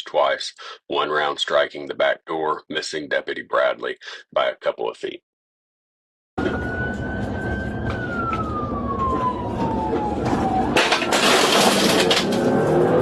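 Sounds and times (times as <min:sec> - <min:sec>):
car engine and road noise: 0:06.4 - 0:13.0
police siren wailing: 0:06.4 - 0:13.0.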